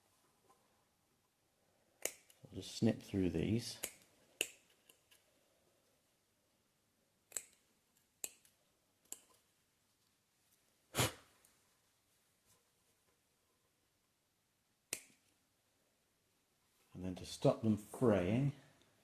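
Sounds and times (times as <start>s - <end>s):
scissors snipping cloth: 2.0s - 2.4s, 7.3s - 9.4s.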